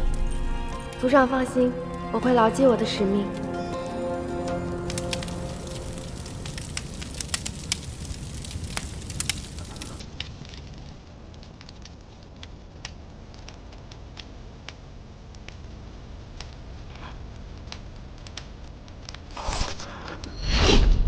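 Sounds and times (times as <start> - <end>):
steady low rumble: 0.0 - 0.8
crackling and popping: 0.0 - 20.3.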